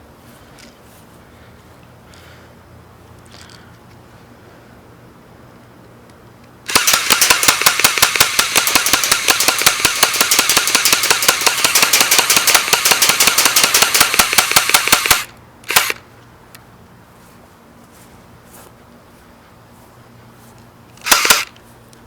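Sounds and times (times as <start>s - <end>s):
airsoft gun full-auto firing: 6.7s - 16.0s, 21.0s - 21.5s.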